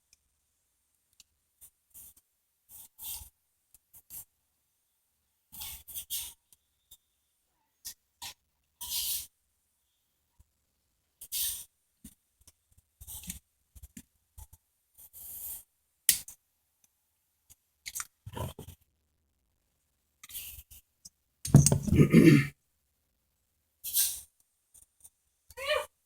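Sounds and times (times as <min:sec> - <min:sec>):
hand tools scraping and rubbing: 0:21.5 - 0:22.2.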